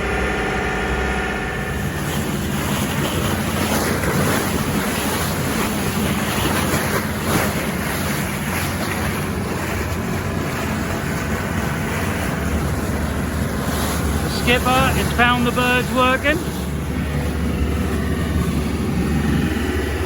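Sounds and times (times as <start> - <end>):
boat engine running: 0.0 - 20.0
water rushing along hull: 0.0 - 20.0
wind buffeting microphone: 0.0 - 20.0.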